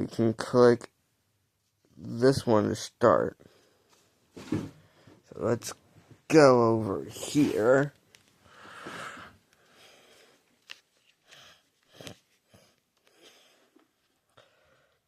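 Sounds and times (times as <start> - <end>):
faint breathing: 3.4 - 4.1, 8.4 - 10.5, 11.2 - 15.0.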